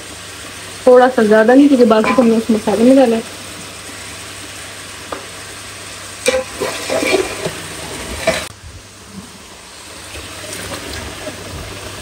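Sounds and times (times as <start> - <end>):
food sizzling in a pot: 0.0 - 10.5
spoon stirring and knocking on pot: 2.0 - 2.4.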